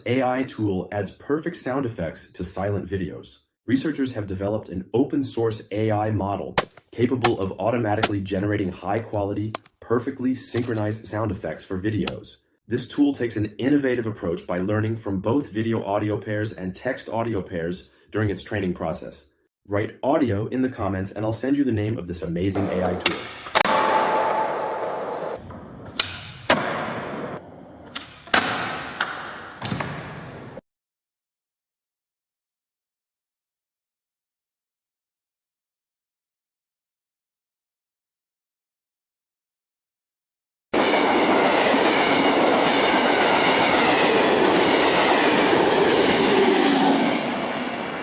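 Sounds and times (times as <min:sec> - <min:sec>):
sharp thuds: 0:06.6 - 0:08.4
rushing noise: 0:40.8 - 0:48.0.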